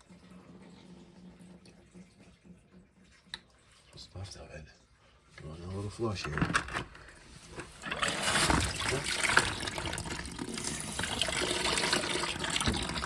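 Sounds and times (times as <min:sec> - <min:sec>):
water rushing through a valve: 0:07.8 - 0:13.0.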